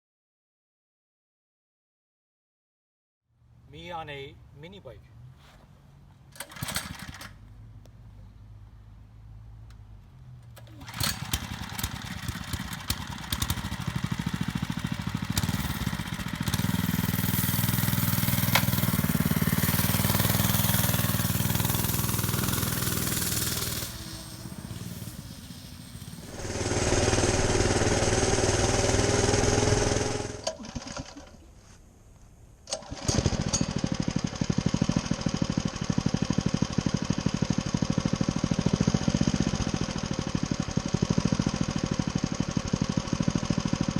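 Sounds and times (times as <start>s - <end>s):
small engine starting and revving: 6.4s - 7.5s, 10.5s - 31.4s, 32.7s - 43.9s.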